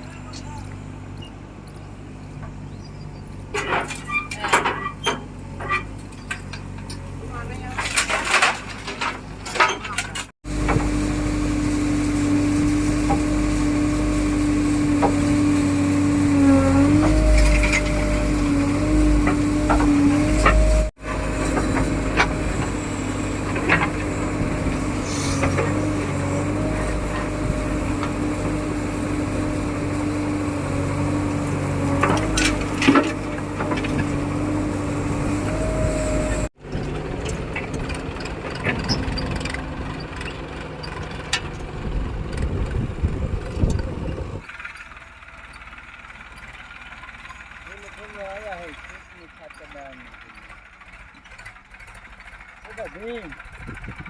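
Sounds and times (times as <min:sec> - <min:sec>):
diesel engine running: 0:00.0 - 0:54.0
steady mechanical whine: 0:10.1 - 0:50.0.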